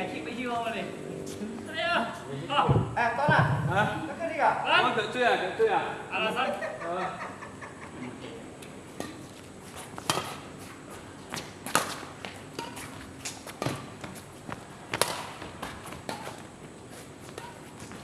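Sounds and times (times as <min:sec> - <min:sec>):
rackets hitting shuttlecock: 0:10.0 - 0:10.6, 0:11.3 - 0:14.2, 0:14.9 - 0:16.5, 0:17.3 - 0:18.0.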